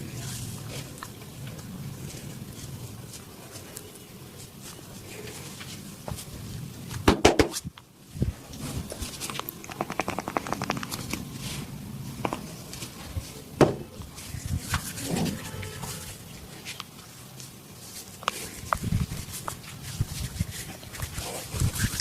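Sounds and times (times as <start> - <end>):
sharp slaps on body: 7.1 - 7.6.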